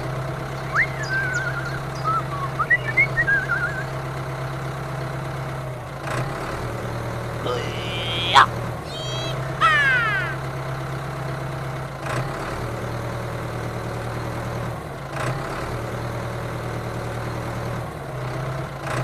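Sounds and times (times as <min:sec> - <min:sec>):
tractor motor humming: 0:00.2 - 0:04.3.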